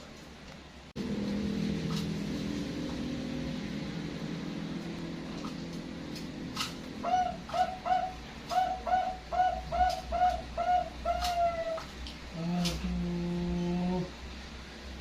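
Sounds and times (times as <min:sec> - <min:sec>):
low steady hum: 0:00.0 - 0:15.0
dove cooing: 0:06.4 - 0:14.2.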